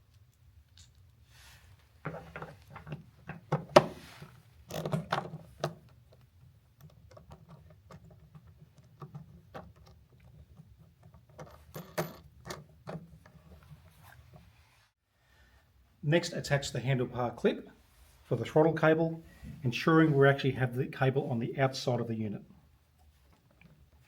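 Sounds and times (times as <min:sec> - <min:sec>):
hardware clicks and knocks: 0:02.0 - 0:13.8.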